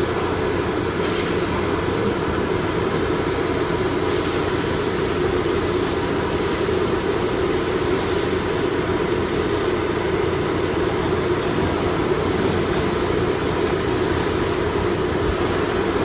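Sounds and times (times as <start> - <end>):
machinery drone: 8.8 - 16.0.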